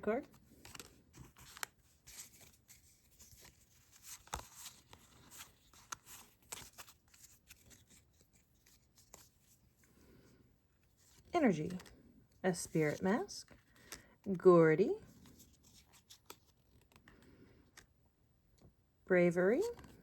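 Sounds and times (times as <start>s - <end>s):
trading cards rustling: 0.1s - 10.1s, 10.8s - 11.9s, 12.5s - 14.1s, 15.1s - 17.9s, 19.5s - 20.0s.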